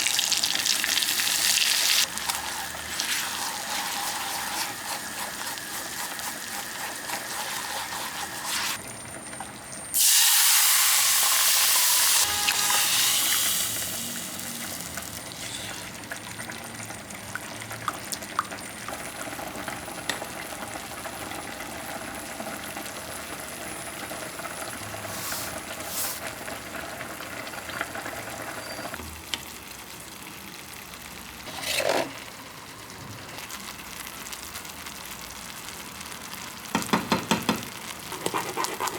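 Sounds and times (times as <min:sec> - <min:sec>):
food sizzling in a frying pan: 0:00.0 - 0:08.8, 0:10.0 - 0:38.2
utensils clinking: 0:31.5 - 0:32.2.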